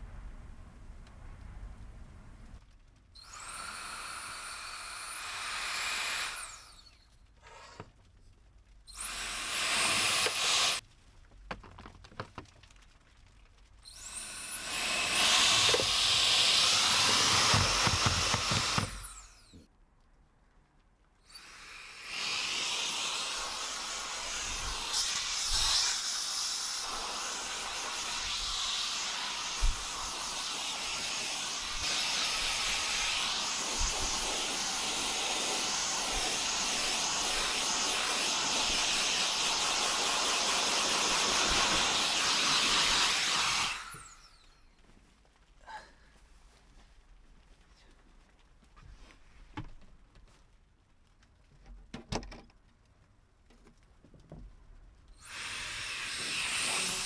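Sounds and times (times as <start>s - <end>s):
electric blower running: 3.2s - 6.9s, 9.0s - 10.8s, 13.9s - 19.6s, 21.3s - 44.2s, 55.2s - 57.0s.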